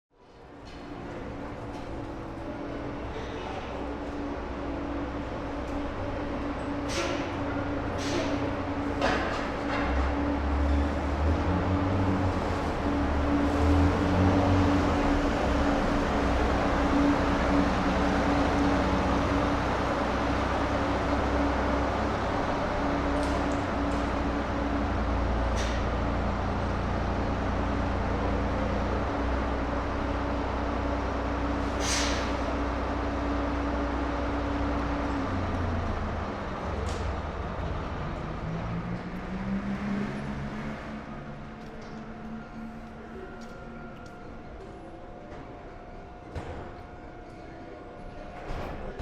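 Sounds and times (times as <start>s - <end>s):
bus engine running: 0.3s - 49.0s
air brake hiss: 6.8s - 8.5s, 31.6s - 32.6s.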